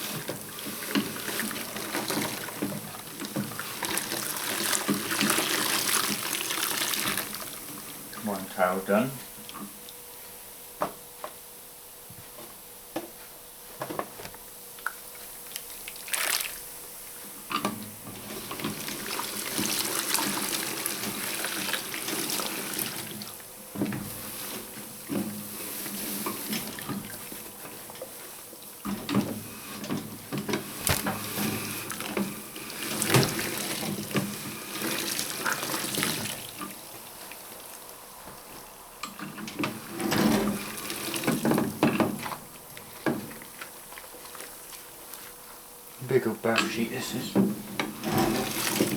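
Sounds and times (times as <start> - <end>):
water splashing and sloshing: 0.0 - 7.9, 15.4 - 16.7, 28.8 - 38.5, 39.2 - 45.6, 47.4 - 48.9.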